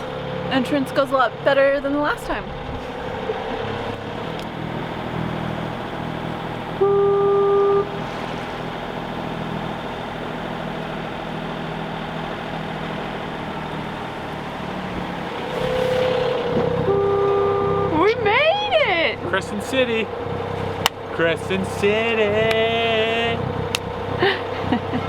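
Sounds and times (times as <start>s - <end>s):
boat engine running: 0.0s - 25.0s
deep boat horn blast: 6.4s - 9.2s, 15.0s - 19.7s.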